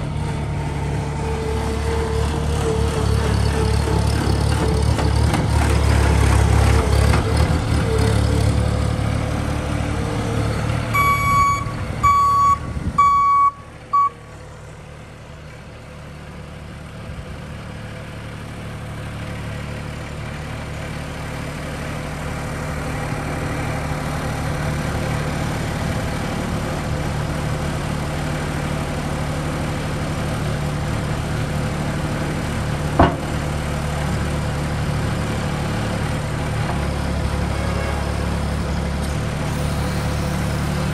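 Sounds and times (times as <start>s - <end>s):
loader engine running: 0.0s - 40.9s
electronic warning beeps: 11.0s - 14.1s.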